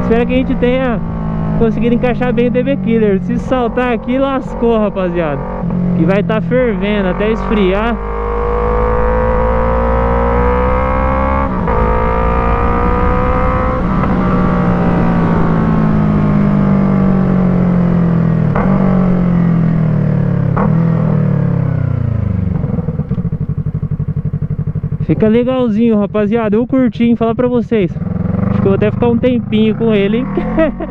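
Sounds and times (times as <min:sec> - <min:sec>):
motorcycle engine revving: 0:00.0 - 0:30.9.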